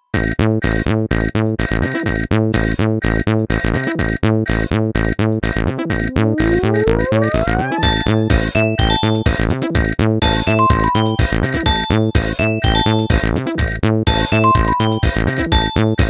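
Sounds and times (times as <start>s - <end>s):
mobile phone ringtone: 6.2s - 9.3s, 10.3s - 13.1s, 14.2s - 16.0s.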